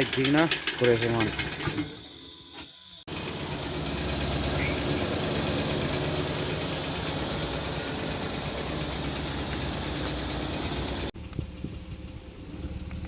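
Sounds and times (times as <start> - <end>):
car engine idling: 3.1 - 13.0.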